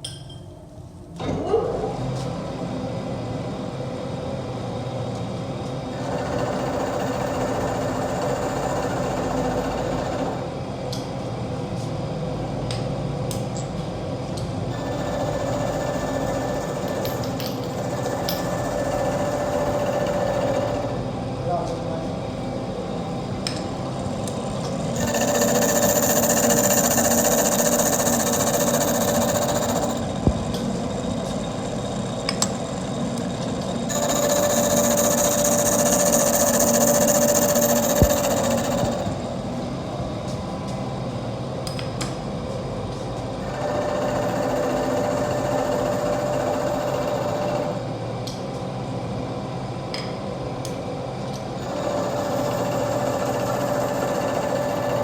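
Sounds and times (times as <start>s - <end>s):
milling machine running: 5.9s - 10.5s, 14.7s - 21.3s, 23.1s - 39.7s, 43.4s - 47.9s, 51.6s - 55.0s
high whine of cutter on metal: 5.9s - 10.6s, 14.7s - 21.3s, 23.4s - 39.9s, 43.4s - 48.0s, 51.6s - 55.0s.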